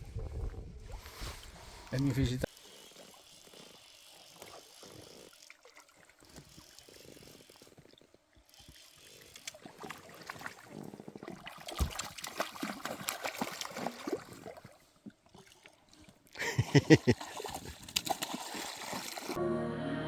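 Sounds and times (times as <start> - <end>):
small crackles: 1.8 - 11.8
water trickling and splashing: 2.5 - 19.4.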